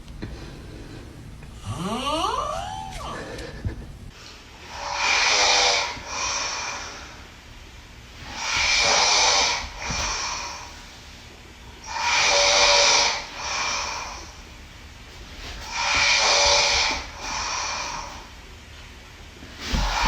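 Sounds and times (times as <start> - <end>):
person snoring with whistle: 1.6 - 3.4, 11.9 - 14.2.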